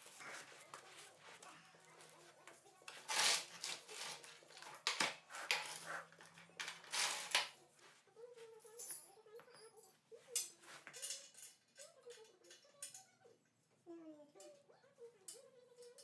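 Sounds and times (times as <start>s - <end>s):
metal tools clinking: 2.9s - 7.6s, 8.6s - 13.1s.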